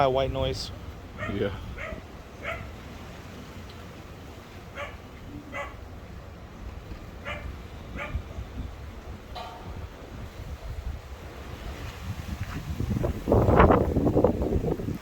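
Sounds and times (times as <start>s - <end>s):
dog barking: 1.2s - 2.8s, 4.7s - 5.8s, 7.2s - 8.2s.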